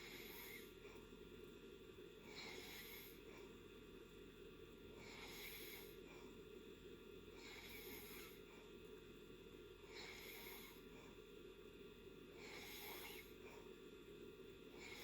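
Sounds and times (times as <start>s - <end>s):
person snoring softly: 0.0s - 1.0s, 2.2s - 3.6s, 5.0s - 6.4s, 7.3s - 8.7s, 9.8s - 11.2s, 12.3s - 13.7s, 14.7s - 15.0s.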